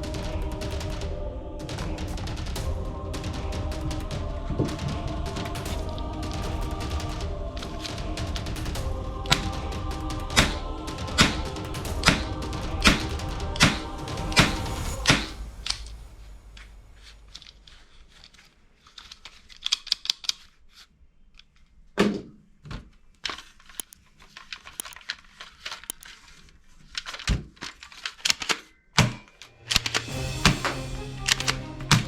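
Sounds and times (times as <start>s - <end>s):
plastic toy gun clicks: 24.8s - 25.1s, 25.9s - 26.1s.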